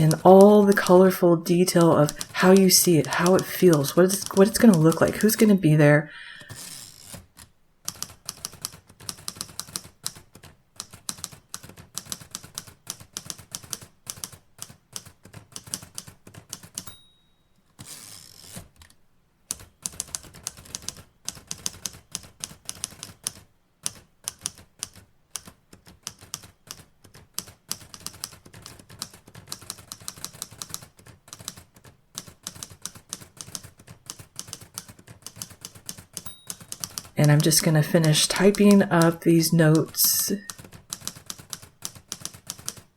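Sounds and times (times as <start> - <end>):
typewriter keys clacking: 0.0 - 5.6, 6.3 - 17.0, 17.8 - 42.9
typewriter bell ding: 16.8 - 17.6, 36.2 - 37.0.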